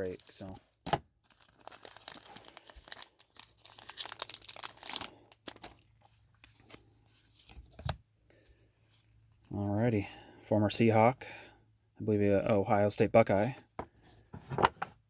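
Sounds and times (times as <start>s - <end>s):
plastic wrapping crinkling: 1.2s - 7.5s.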